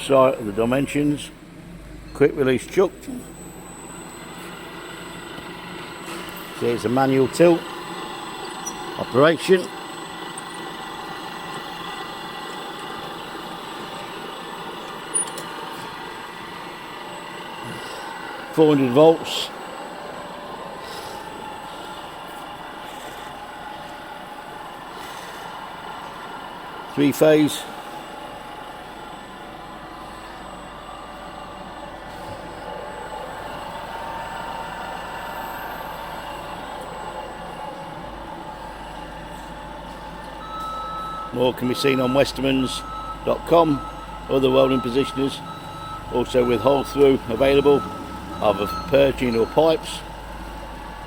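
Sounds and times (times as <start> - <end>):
steady machinery noise: 0.0 - 51.0.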